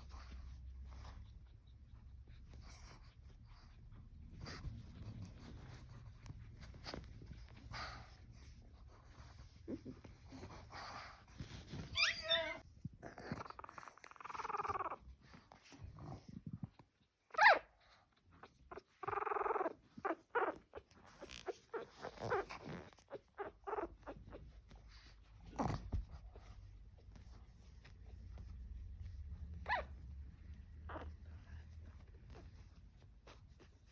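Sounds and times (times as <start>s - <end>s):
puppies whimpering and squealing: 6.6s - 15.7s, 17.3s - 17.7s, 18.3s - 27.3s, 29.6s - 33.9s.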